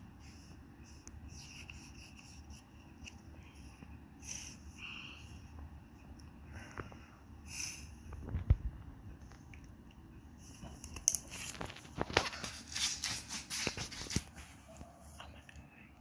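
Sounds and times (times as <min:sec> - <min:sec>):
drawing strokes scratching paper: 0:00.0 - 0:04.8.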